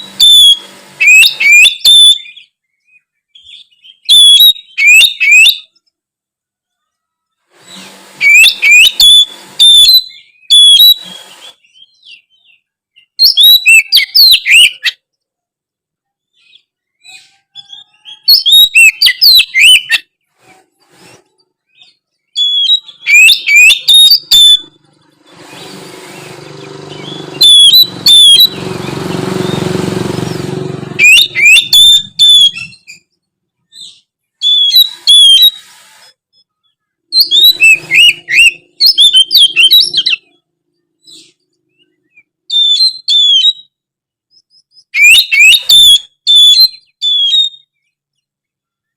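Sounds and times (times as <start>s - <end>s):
bird singing whistled phrases: 0.0s - 5.8s, 8.2s - 15.0s, 16.4s - 20.0s, 21.7s - 24.8s, 25.6s - 28.6s, 31.0s - 33.0s, 33.7s - 35.6s, 37.1s - 40.3s, 42.5s - 43.8s, 44.4s - 47.8s
low rumbling noise: 24.6s - 31.4s.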